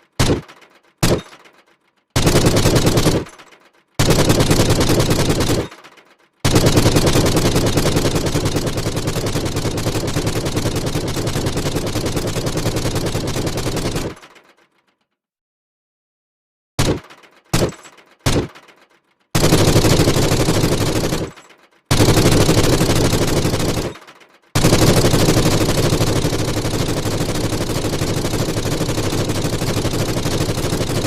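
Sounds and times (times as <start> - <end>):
submachine gun shots: 0.1 - 1.4, 2.2 - 5.8, 6.4 - 14.3, 16.8 - 18.6, 19.4 - 31.0
automatic gunfire bursts: 0.2 - 1.4, 2.2 - 3.4, 4.0 - 5.8, 6.4 - 14.2, 19.4 - 31.0.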